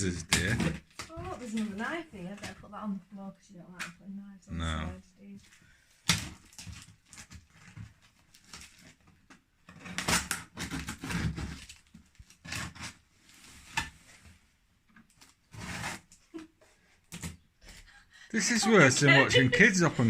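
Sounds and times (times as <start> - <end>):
parcel packaging tearing and rustling: 5.9 - 13.8.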